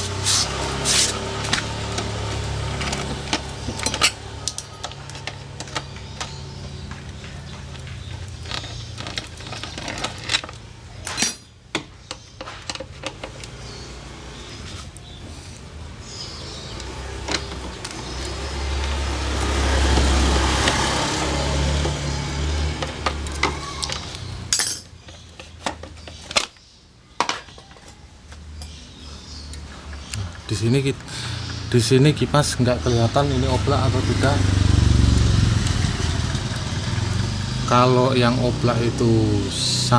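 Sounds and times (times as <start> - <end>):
metal tools clinking: 2.7 - 6.4, 8.3 - 11.6, 23.3 - 26.5.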